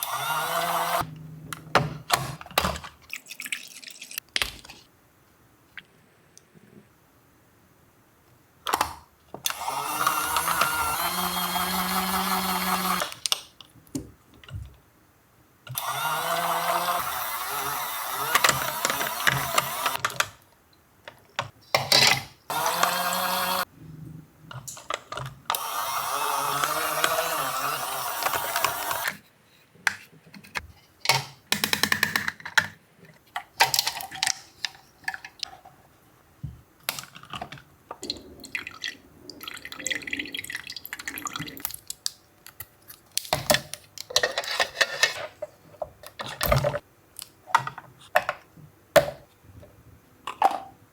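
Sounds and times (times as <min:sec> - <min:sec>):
mini washing machine motor humming: 0:09.5 - 0:13.1, 0:15.7 - 0:20.0, 0:22.5 - 0:23.7, 0:25.5 - 0:29.2.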